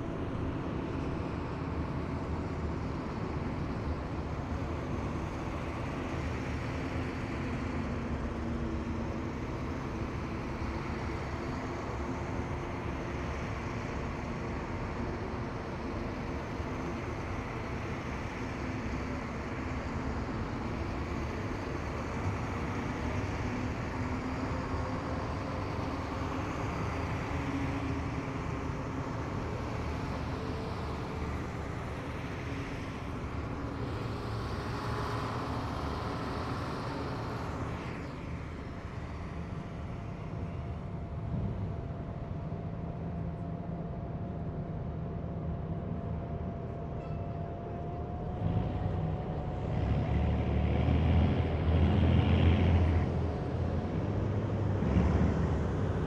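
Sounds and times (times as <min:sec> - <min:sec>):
heavy vehicles engine rumble: 0:00.0 - 0:56.0.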